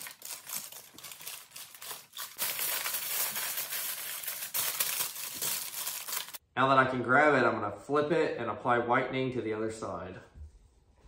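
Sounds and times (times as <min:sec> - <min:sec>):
aluminum foil crinkling: 0:00.0 - 0:06.4.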